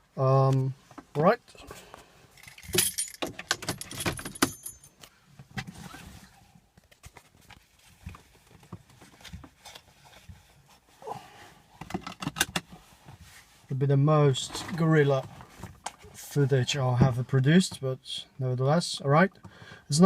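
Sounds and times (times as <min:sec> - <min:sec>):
clicks and rattles in car: 0:02.4 - 0:04.8.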